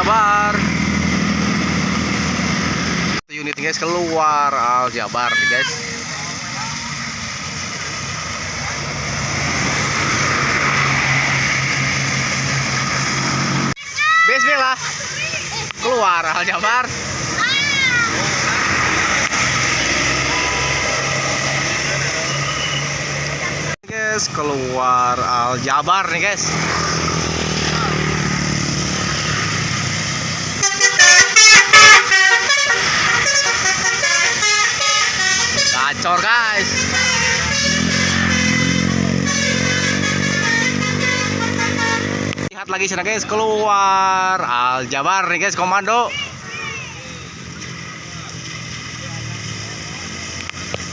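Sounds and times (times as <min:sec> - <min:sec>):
bus engine drone: 0:00.0 - 0:14.2, 0:14.8 - 0:50.9
tyre hiss and road noise: 0:00.0 - 0:50.9
bus horn playing multi-tone tune: 0:30.6 - 0:42.4.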